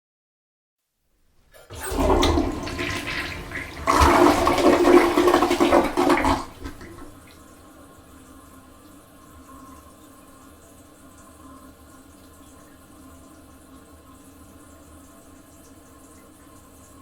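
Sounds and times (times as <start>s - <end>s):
toilet flushing: 1.6s - 8.0s.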